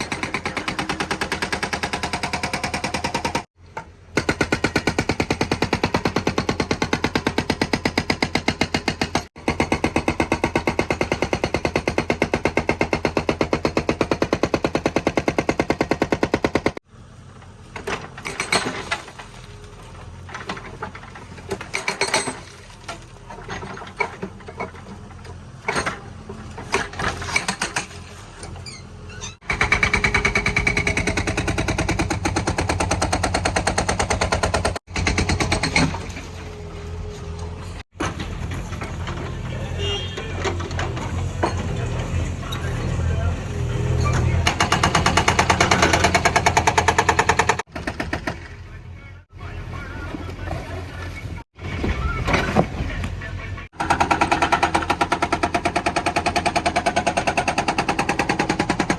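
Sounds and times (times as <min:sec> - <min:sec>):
hydraulic breaker hammering brick: 0:53.7 - 0:58.9.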